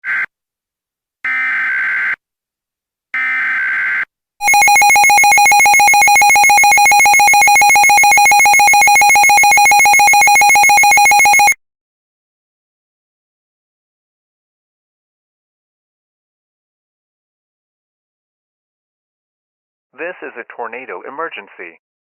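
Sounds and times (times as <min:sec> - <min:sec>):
two-tone attention signal: 0:04.4 - 0:11.6.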